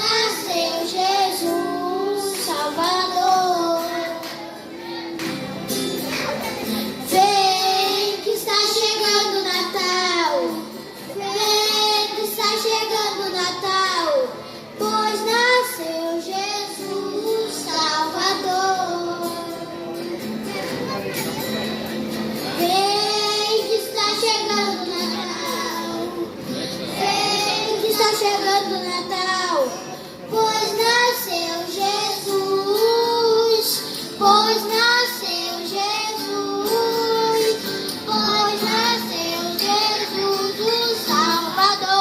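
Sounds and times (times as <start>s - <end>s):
children singing: 0.0s - 5.2s, 6.2s - 20.0s, 22.5s - 42.0s
music: 0.0s - 42.0s
woman singing: 30.4s - 42.0s.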